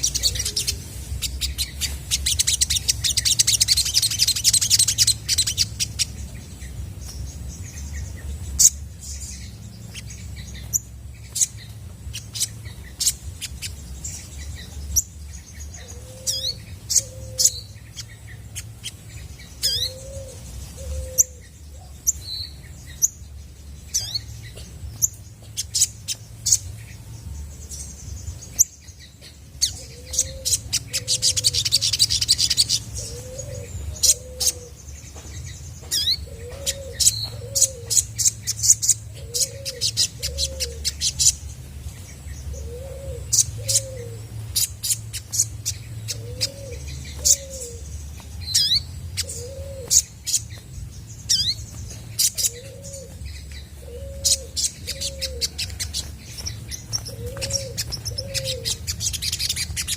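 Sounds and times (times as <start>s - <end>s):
steady low hum: 0.0s - 59.9s
sunbird chirping and trilling: 0.0s - 59.9s.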